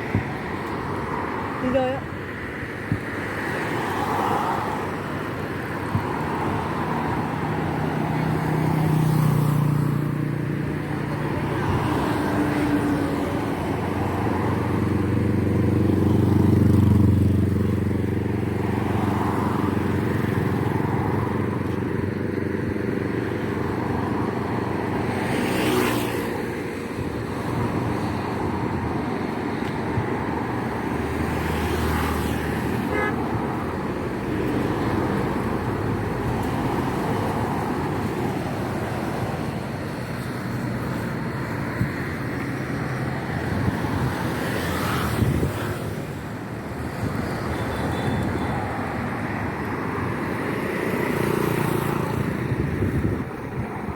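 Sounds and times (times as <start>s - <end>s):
motorbike and car engines: 0.0s - 53.9s
horns tooting: 32.8s - 33.5s, 47.5s - 48.6s.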